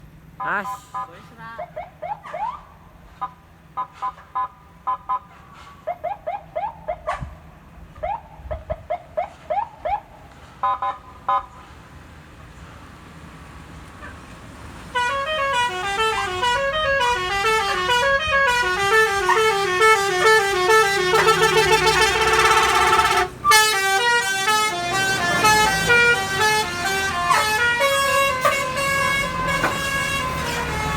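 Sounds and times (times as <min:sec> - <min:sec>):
bus air horn melody: 0:00.4 - 0:01.4, 0:03.1 - 0:05.8, 0:14.9 - 0:30.9.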